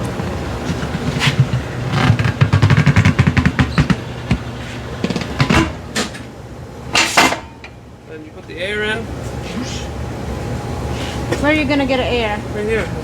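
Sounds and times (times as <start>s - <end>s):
tire changer turntable humming: 0.0s - 8.1s
knocks: 0.7s - 6.1s.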